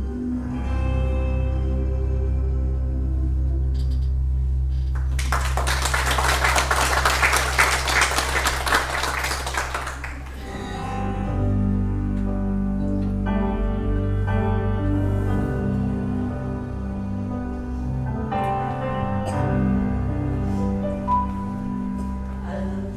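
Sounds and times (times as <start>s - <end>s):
congregation clapping: 4.9s - 10.5s
instrumental music with sustained notes: 6.7s - 22.9s.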